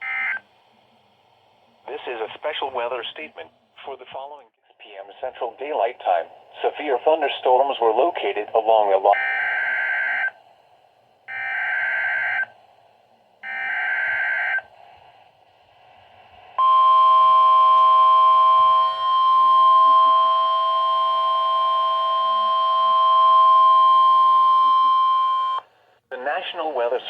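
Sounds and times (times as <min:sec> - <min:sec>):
steady alarm tone: 0:09.2 - 0:10.4, 0:11.3 - 0:12.5, 0:13.4 - 0:14.7, 0:16.6 - 0:25.6.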